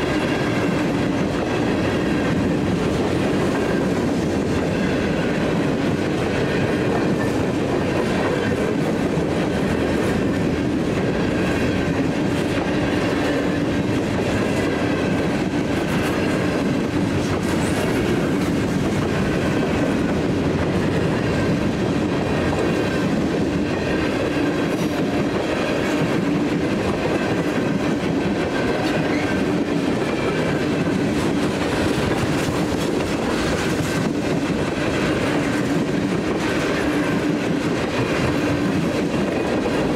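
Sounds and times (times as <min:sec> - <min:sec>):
train wheels rumbling on rail: 0:00.0 - 0:39.9.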